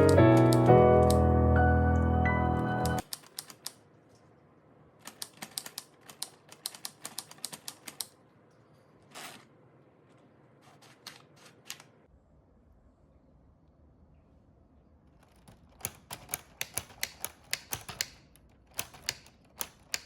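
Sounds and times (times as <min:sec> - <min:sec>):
plastic typewriter key clicks: 0:00.0 - 0:01.2, 0:05.0 - 0:08.1, 0:15.2 - 0:20.0.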